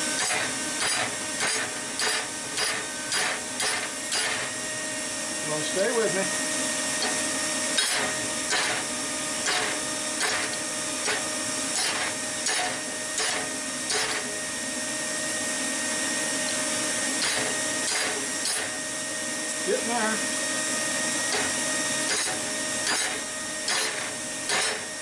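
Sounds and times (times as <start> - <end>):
steady mechanical whir: 0.0 - 25.0
hammer striking steel on anvil: 0.2 - 4.5, 7.8 - 8.8, 9.4 - 14.3, 17.2 - 18.7, 21.3 - 24.9.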